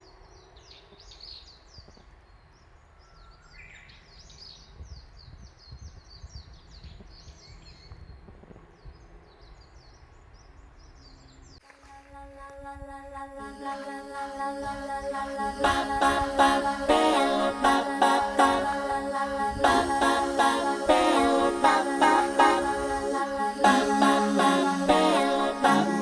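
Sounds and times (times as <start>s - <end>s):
small birds chirping: 0.0s - 11.6s
music: 15.6s - 26.0s.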